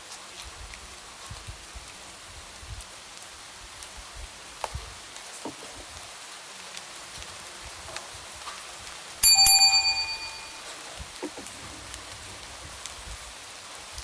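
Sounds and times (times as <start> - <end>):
light rain falling: 0.0 - 9.2
bright bell-like chime: 9.2 - 10.6.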